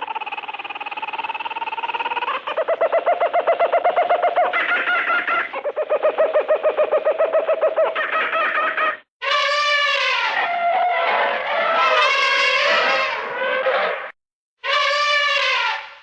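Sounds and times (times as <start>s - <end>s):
animal chattering: 0.0s - 8.7s.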